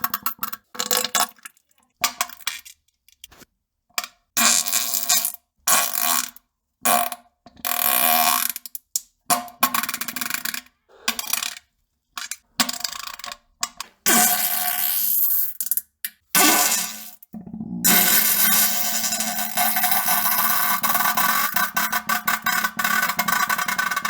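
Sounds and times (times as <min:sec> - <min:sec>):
fart sounds: 0:17.3 - 0:18.7.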